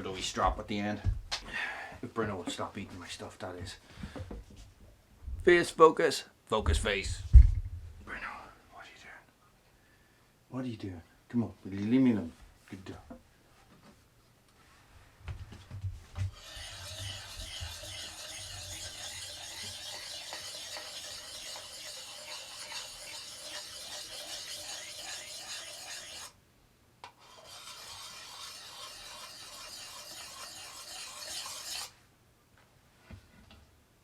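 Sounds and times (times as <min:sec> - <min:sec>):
sharpening stone scraping axe: 0:16.3 - 0:26.4, 0:27.2 - 0:32.0.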